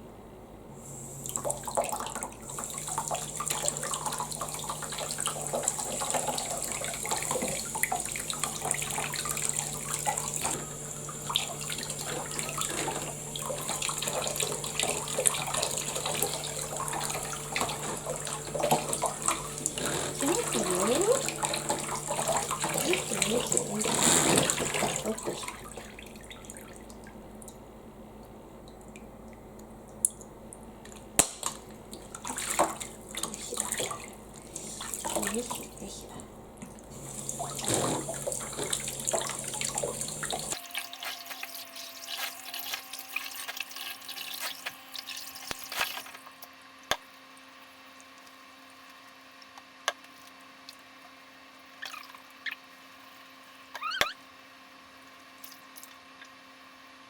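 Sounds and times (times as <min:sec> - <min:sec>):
water splashing and running: 0:01.3 - 0:27.1, 0:31.9 - 0:36.0, 0:36.8 - 0:46.3
water dripping: 0:28.2 - 0:35.8.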